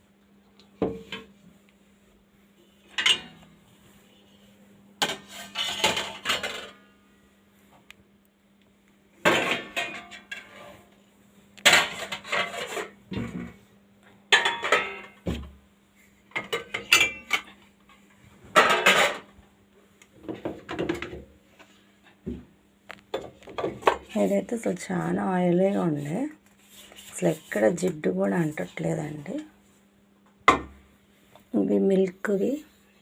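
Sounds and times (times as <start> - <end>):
dishes clattering: 2.9 - 3.4, 5.0 - 6.8, 9.3 - 10.6, 14.3 - 15.2, 16.4 - 17.6, 18.5 - 19.3.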